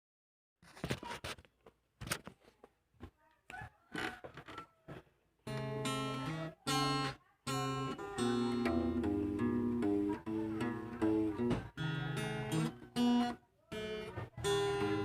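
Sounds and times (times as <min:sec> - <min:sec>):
acoustic guitar strumming chords: 0:05.5 - 0:15.0.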